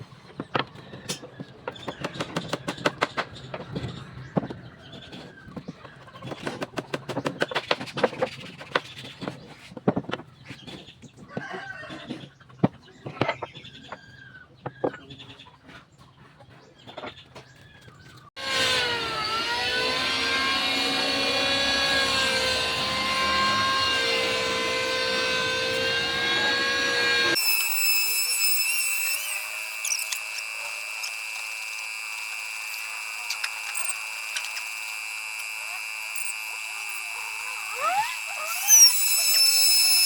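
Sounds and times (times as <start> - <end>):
wood and tools knocking: 0.2 - 4.6, 5.2 - 10.7
electric power tool motor: 18.4 - 40.0.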